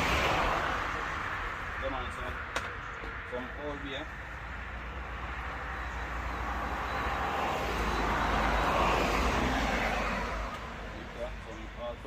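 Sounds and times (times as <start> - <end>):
vehicle passing by: 0.0 - 2.4, 3.2 - 11.7.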